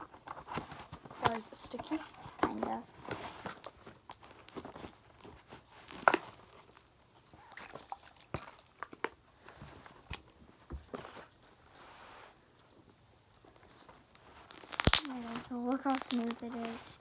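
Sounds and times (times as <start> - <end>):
wet slime squelches: 7.2 - 9.3, 14.4 - 17.0
small popping clicks: 14.1 - 16.9.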